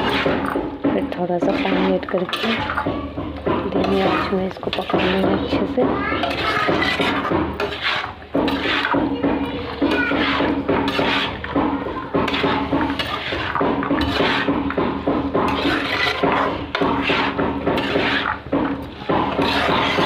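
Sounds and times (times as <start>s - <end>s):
metal spoon scraping a pan: 0.0s - 20.0s.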